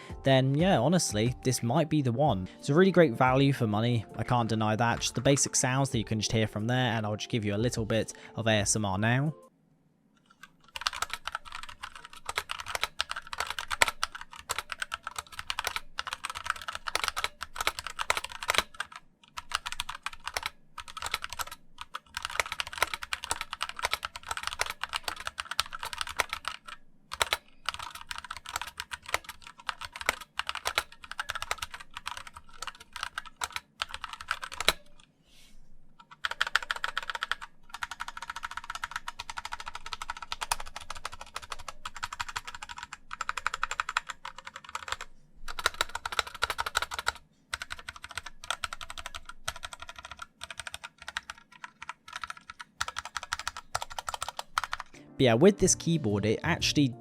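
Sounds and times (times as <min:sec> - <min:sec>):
mechanical keyboard typing: 0:10.2 - 0:35.0, 0:36.0 - 0:55.0.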